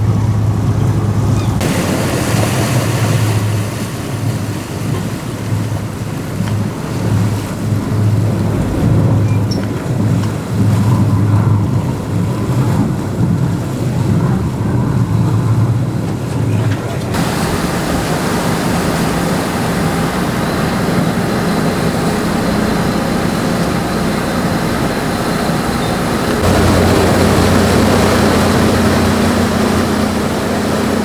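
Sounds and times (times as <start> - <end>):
boat engines humming: 0.0 - 31.0
rushing water: 0.0 - 31.0
wind: 0.0 - 31.0.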